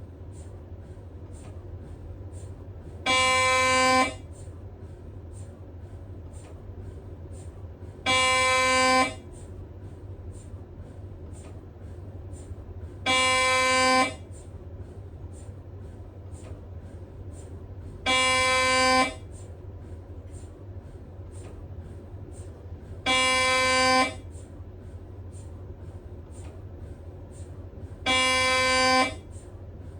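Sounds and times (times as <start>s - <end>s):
steady low hum: 0.0s - 29.9s
mri scanner buzzing: 18.1s - 19.3s, 23.1s - 24.3s, 28.1s - 29.3s.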